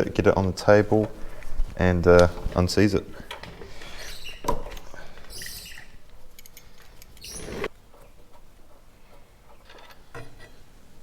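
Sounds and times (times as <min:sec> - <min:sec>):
scraping rustle: 0:00.6 - 0:10.8
hand tools clicking: 0:03.2 - 0:10.5.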